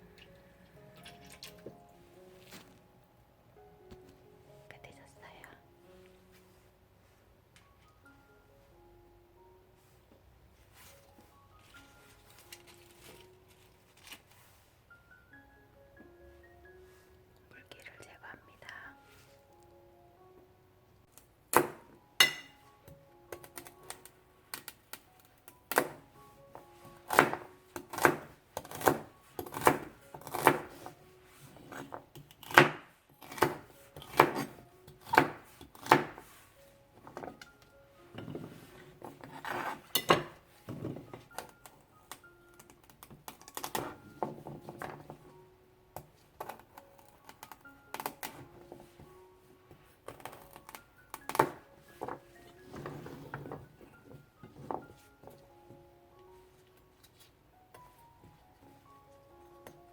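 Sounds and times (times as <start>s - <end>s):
soft background music: 0.0s - 59.9s
knife chopping celery: 25.7s - 26.0s, 27.0s - 30.9s, 31.6s - 36.4s.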